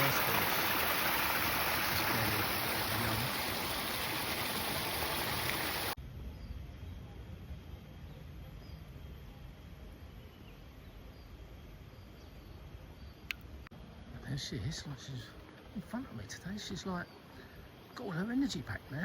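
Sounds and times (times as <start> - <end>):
water rushing along channel: 0.0 - 6.0.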